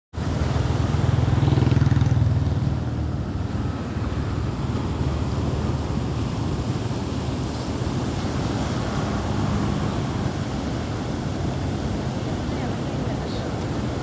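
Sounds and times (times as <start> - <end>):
sea waves breaking: 0.2 - 14.0.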